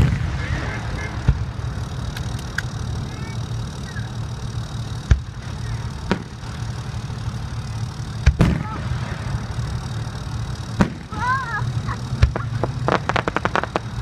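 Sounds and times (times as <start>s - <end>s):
fireworks pops and bangs: 0.0s - 2.8s, 6.1s - 6.4s, 8.2s - 9.2s, 10.8s - 11.2s, 12.2s - 14.0s.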